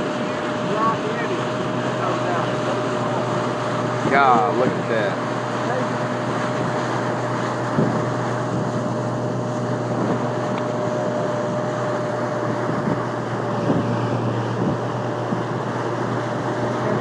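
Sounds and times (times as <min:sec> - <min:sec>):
boat motor running: 0:00.0 - 0:17.0
wind on microphone: 0:00.0 - 0:17.0.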